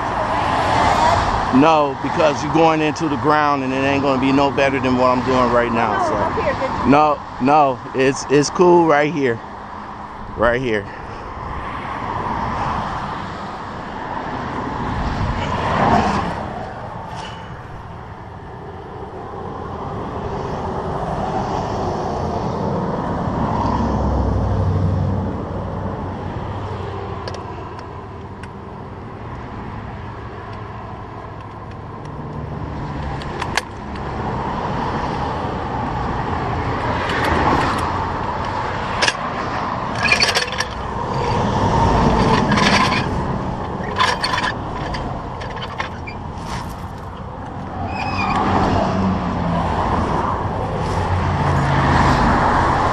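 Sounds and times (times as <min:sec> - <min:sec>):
highway traffic passing: 0:00.0 - 0:52.9
metallic clanks and scrapes: 0:17.0 - 0:17.9, 0:36.8 - 0:47.3.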